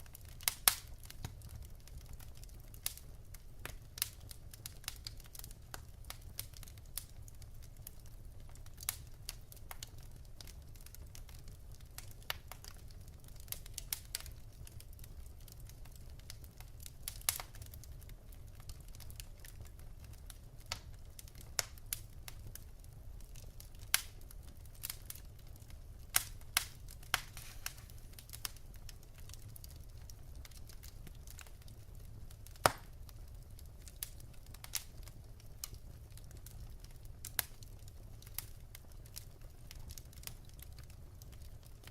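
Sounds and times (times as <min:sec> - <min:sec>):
logs crackling and popping: 0:00.0 - 0:41.9
low rumble of flames: 0:00.0 - 0:41.9.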